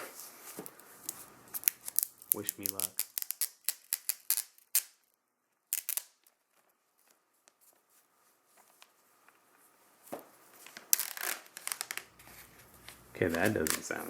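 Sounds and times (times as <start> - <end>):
packaging crinkling and tearing: 0.7 - 5.1, 10.6 - 12.2, 12.8 - 14.0.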